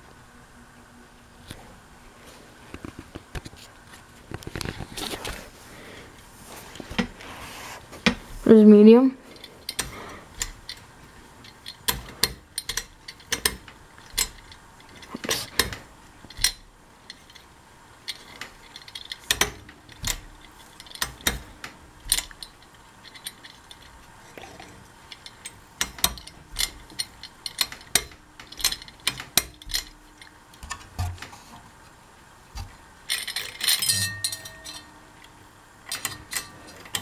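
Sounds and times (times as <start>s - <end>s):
metallic rattle: 9.3s - 24.0s, 24.6s - 30.3s, 33.0s - 35.1s
light metallic clinks and clicks: 33.1s - 35.0s.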